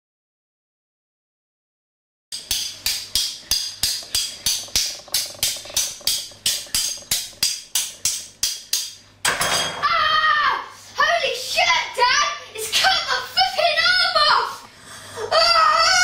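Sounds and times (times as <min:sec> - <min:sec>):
sharp ringing knocks: 0:02.4 - 0:09.8.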